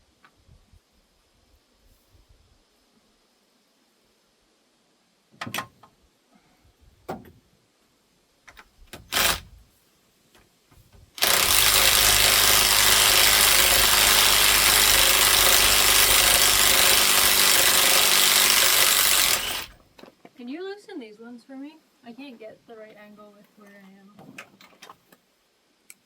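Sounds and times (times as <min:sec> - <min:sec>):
motor running with whirring hiss: 0:11.2 - 0:19.8.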